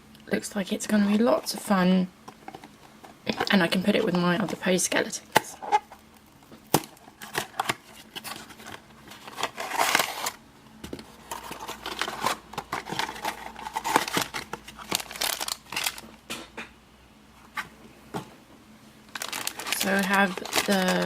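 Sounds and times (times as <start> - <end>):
plastic and cardboard rustling: 5.5 - 16.1, 19.1 - 21.0.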